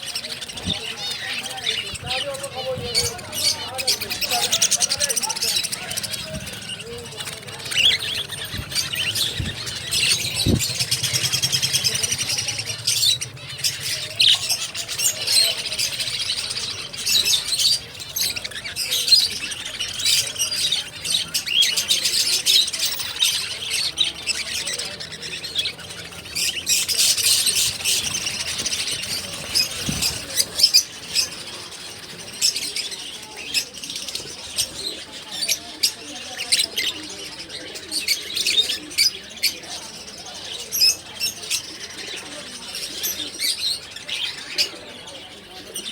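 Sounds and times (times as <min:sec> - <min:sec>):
caged birds chirping and squawking: 0:00.0 - 0:45.9.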